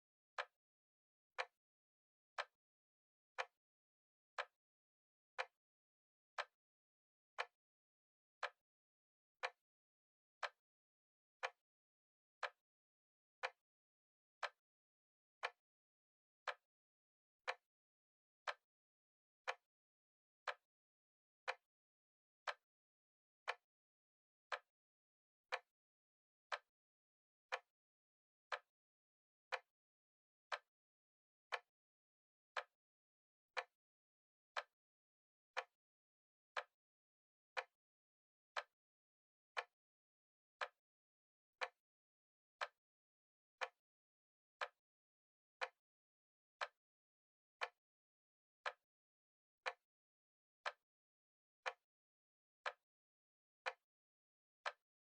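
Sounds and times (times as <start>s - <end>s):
clock ticking: 28.5s - 28.7s.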